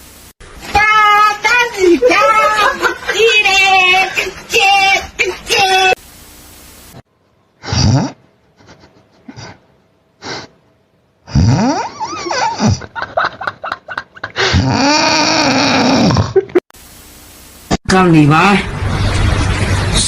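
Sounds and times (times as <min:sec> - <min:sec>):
person snoring: 0:07.6 - 0:08.2, 0:11.2 - 0:12.8, 0:14.4 - 0:16.5.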